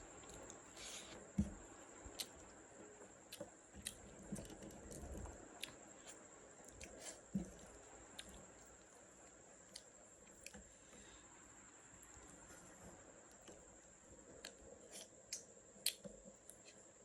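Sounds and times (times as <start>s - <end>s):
person chewing: 3.3s - 8.9s.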